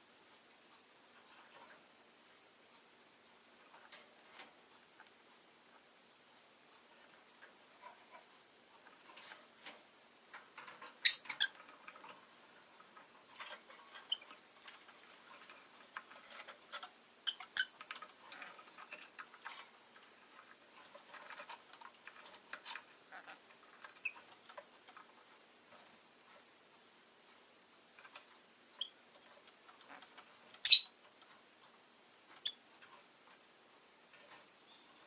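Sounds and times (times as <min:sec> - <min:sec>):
small clicks and scratches: 0:00.3 - 0:02.0, 0:03.6 - 0:35.0
bird chirping: 0:11.0 - 0:11.7, 0:28.8 - 0:29.0, 0:29.9 - 0:31.0, 0:34.6 - 0:35.0.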